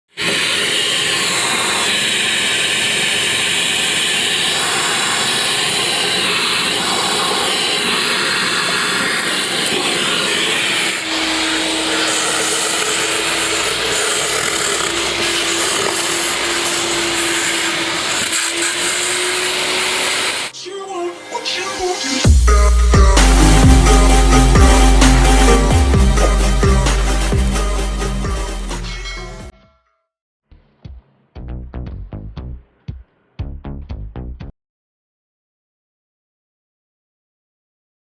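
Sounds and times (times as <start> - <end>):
wet and dry vacuum cleaner running: 0.1 - 20.5
deep rumble and hum: 22.3 - 29.5, 31.4 - 32.7, 33.4 - 34.5.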